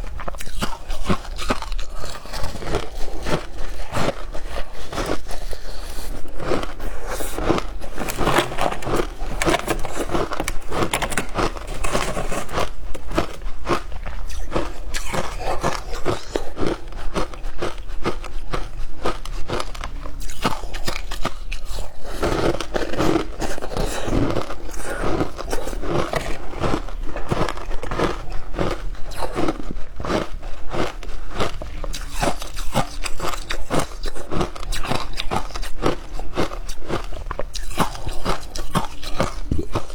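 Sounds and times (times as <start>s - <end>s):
shaved ice crunching: 1.3s - 17.3s.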